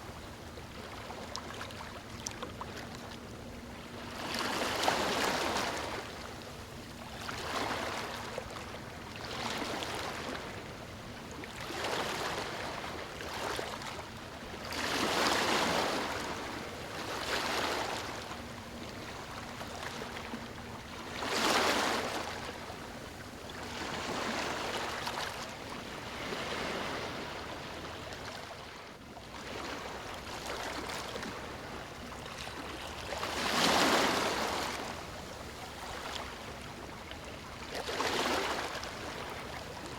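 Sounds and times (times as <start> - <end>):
ocean waves breaking on beach: 14.7 - 19.6, 23.6 - 28.2, 32.6 - 39.9.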